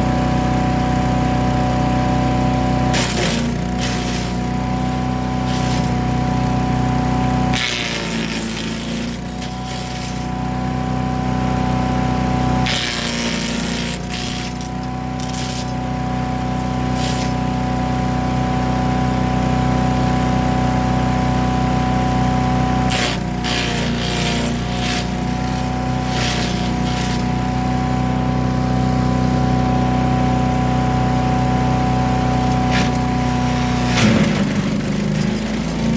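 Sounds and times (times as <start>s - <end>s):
chipper engine running: 0.0s - 35.9s
branches crunching in chipper: 2.0s - 10.7s, 12.4s - 17.8s, 22.3s - 35.9s.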